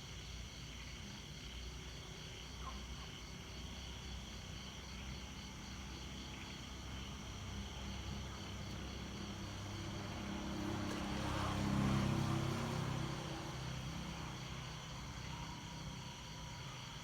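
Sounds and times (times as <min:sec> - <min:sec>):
low engine hum: 0:06.3 - 0:16.8.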